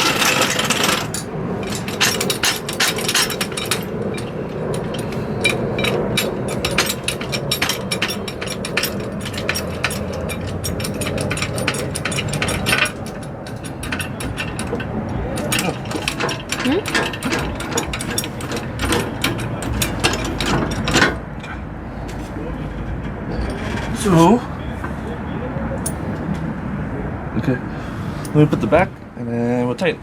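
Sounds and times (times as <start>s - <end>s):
ratchet wrench clicking: 0.0s - 21.2s
metal hardware knocking: 0.0s - 24.3s.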